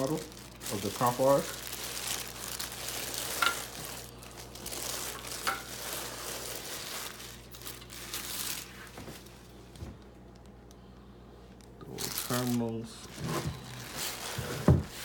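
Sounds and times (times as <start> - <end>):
plastic packaging crinkling: 0.0 - 10.8, 11.5 - 15.0.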